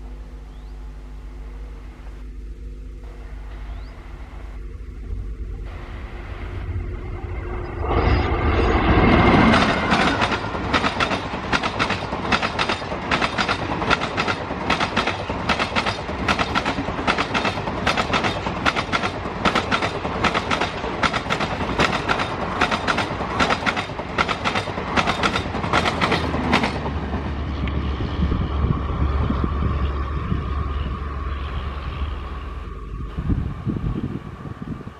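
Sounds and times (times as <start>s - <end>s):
train low rumble: 0.0s - 34.9s
train wheels clicking over rail joints: 9.2s - 27.9s.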